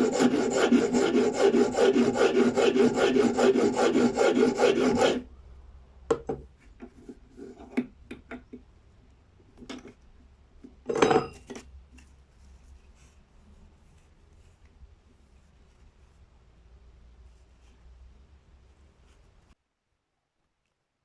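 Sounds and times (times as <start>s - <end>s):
file rasping on knife: 0.0s - 5.2s.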